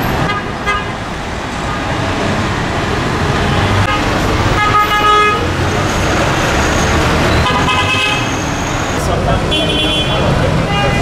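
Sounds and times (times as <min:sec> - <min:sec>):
street traffic: 0:00.0 - 0:11.0
car horn beeps: 0:03.5 - 0:05.6, 0:07.2 - 0:08.7, 0:09.5 - 0:11.0.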